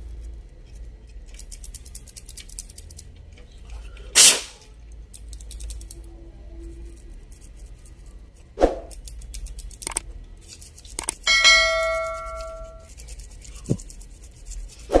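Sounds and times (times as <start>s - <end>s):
short loud hiss: 4.2s - 4.6s.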